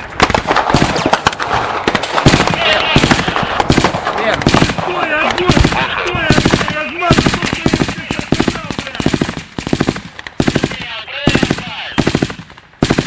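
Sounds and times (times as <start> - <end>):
automatic gunfire: 0.0 - 13.0
men's voices: 2.4 - 9.4, 10.5 - 12.1.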